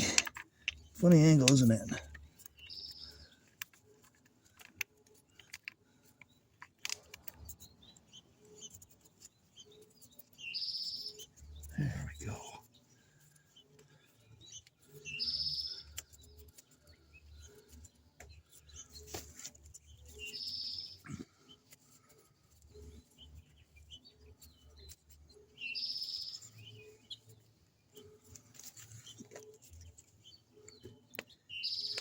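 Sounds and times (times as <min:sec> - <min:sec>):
small tools clicking: 0:00.0 - 0:07.7.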